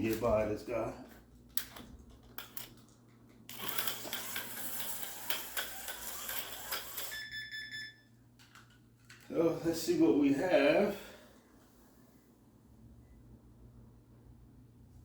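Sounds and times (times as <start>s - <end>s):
lap counter beep: 7.0s - 8.1s.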